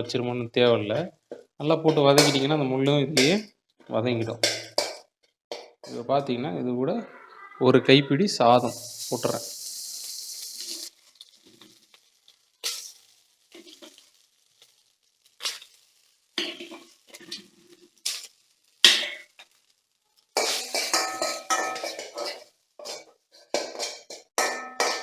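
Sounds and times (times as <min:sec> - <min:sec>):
metal spoon scraping in pan: 0:01.9 - 0:03.5, 0:08.6 - 0:10.9, 0:16.4 - 0:19.5, 0:20.4 - 0:25.0.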